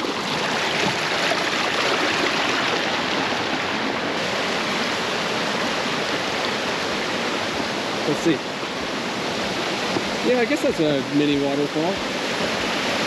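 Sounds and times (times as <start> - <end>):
brook splashing over rocks: 0.0 - 7.8.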